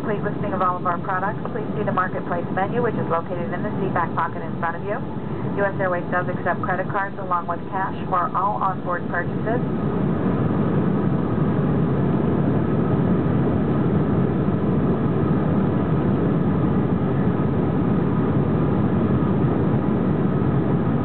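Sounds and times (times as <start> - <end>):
faint steady tones: 0.0 - 11.2
jet engine rumble in cabin: 0.0 - 21.0.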